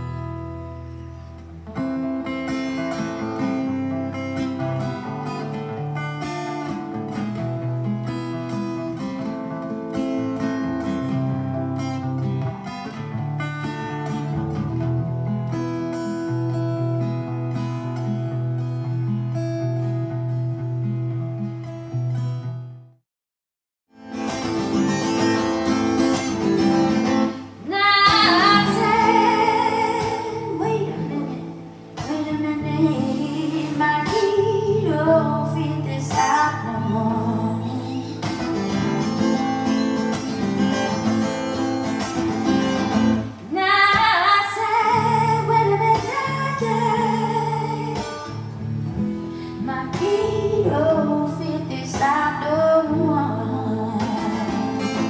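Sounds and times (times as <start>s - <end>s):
acoustic guitar: 0.0s - 23.0s, 23.9s - 55.0s
person singing: 27.6s - 38.5s.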